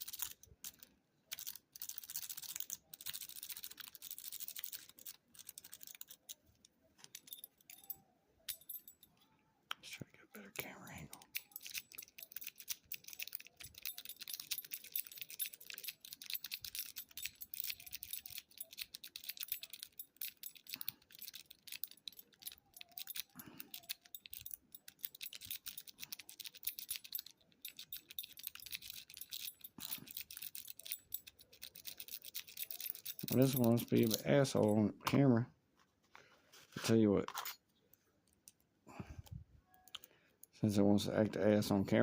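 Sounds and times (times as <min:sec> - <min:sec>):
lock pick scraping in padlock: 0:11.2 - 0:34.7.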